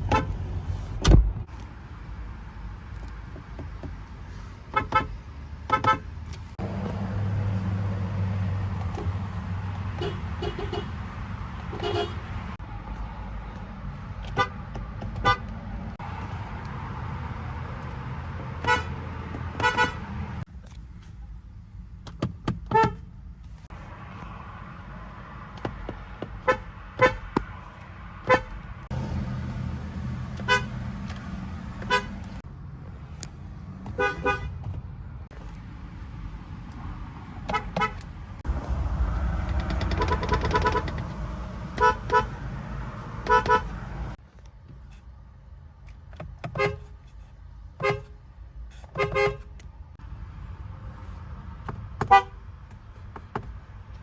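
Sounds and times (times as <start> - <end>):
engine and traffic rumble: 0.0 - 54.0
car horns tooting: 4.7 - 5.1, 5.7 - 6.1, 9.9 - 11.0, 11.7 - 12.4, 14.2 - 15.5, 18.6 - 20.2, 22.7 - 23.0, 26.4 - 27.4, 28.2 - 28.6, 30.4 - 30.8, 31.8 - 32.4, 33.9 - 34.6, 37.5 - 38.0, 39.6 - 42.5, 43.1 - 43.9, 46.5 - 47.2, 47.8 - 49.6, 52.0 - 52.4.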